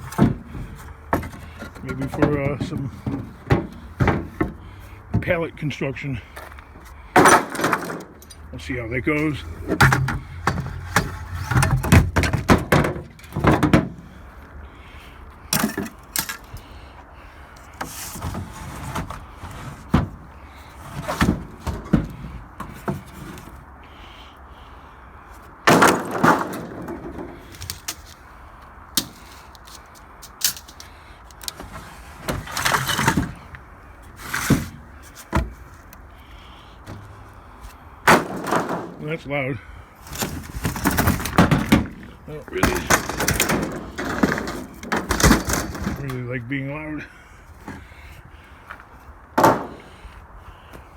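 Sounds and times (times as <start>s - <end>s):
wooden boards knocking together: 0.0s - 5.3s, 7.1s - 8.2s, 9.6s - 14.2s, 17.8s - 23.4s, 25.7s - 28.0s, 38.1s - 39.0s, 40.1s - 46.2s, 49.4s - 50.0s.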